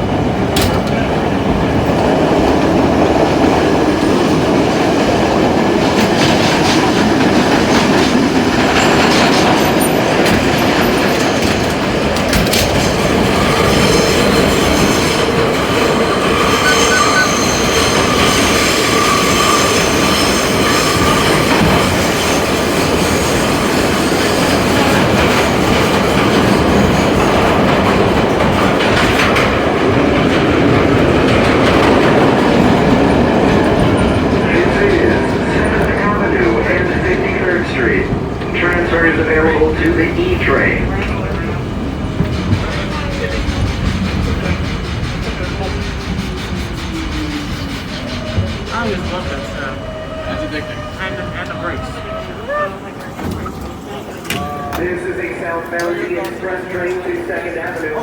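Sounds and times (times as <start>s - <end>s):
rail joints clattering: 0.0s - 52.3s
subway train wheel and rail noise: 0.0s - 58.0s
high steady tone: 16.5s - 18.0s.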